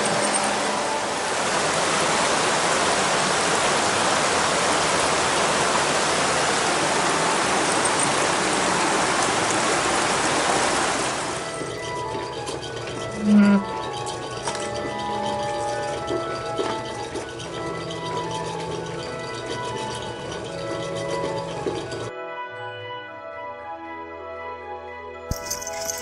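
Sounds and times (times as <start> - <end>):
creek water rushing: 0.0 - 11.7.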